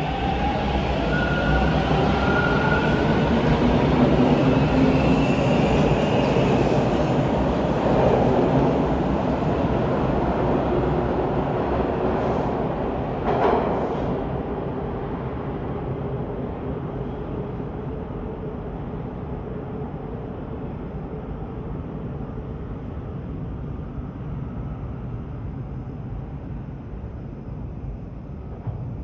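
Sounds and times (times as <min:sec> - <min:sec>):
faint shifting train tones: 0:00.0 - 0:14.3
subway train wheels on rails: 0:00.0 - 0:29.0.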